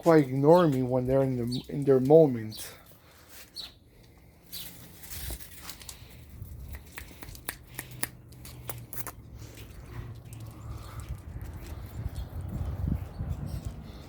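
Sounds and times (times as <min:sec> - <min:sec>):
crunches and rustles: 0:04.4 - 0:12.2
dogs chewing grass: 0:05.5 - 0:14.0.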